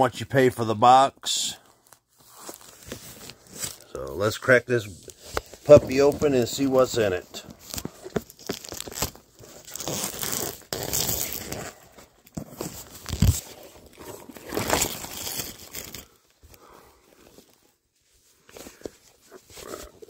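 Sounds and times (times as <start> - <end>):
plastic wrap tearing and crinkling: 5.0 - 16.2.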